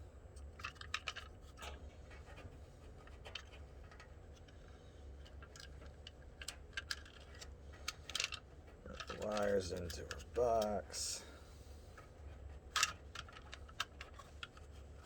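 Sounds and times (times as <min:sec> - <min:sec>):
low steady hum: 0:00.0 - 0:15.0
wires clicking and scraping: 0:05.3 - 0:10.8.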